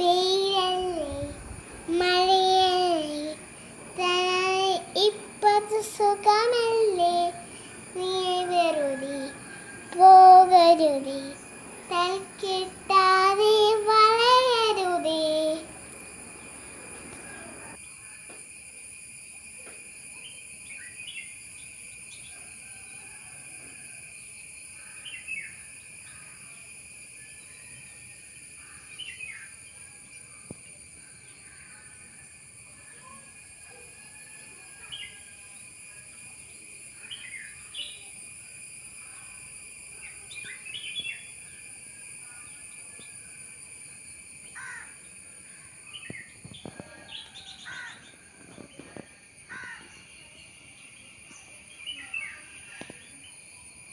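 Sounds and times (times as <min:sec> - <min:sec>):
high-pitched hum: 0:00.0 - 0:17.8
small birds chirping: 0:00.0 - 0:17.8.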